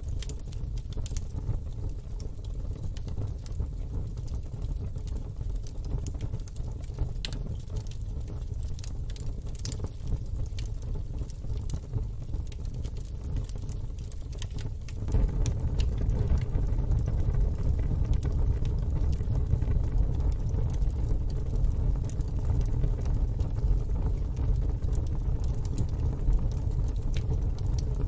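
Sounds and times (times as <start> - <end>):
wood fire crackling: 0.0 - 28.0
sharp pops of fire: 12.5 - 17.2
steady low rumble: 14.8 - 28.0.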